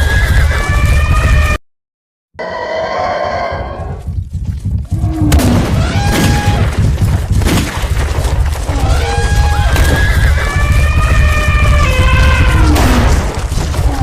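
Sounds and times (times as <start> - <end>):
deep rumble of pounding feet: 3.8 - 14.0.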